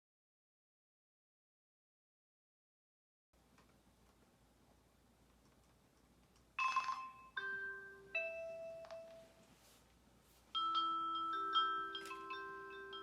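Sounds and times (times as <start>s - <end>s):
bell-like chime melody: 6.6s - 9.4s, 10.6s - 13.0s.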